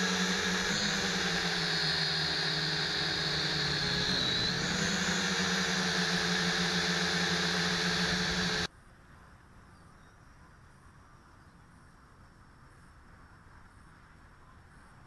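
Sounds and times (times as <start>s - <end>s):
quadcopter propellers whirring: 0.0s - 8.7s.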